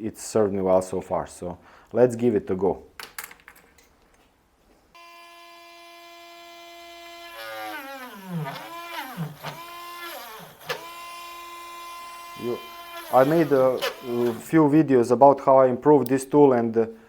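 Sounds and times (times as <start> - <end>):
rotary tool whining: 5.0 - 14.5.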